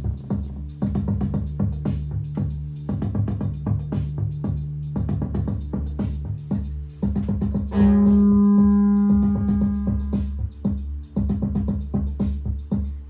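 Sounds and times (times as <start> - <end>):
drum machine pattern: 0.0 - 13.0
synth bass drone: 0.0 - 13.0
loud held synth note: 7.7 - 10.4.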